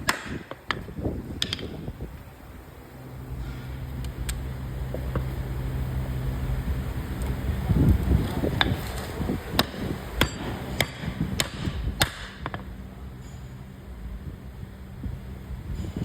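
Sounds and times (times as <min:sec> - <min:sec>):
hammer striking metal: 0:09.6 - 0:12.6.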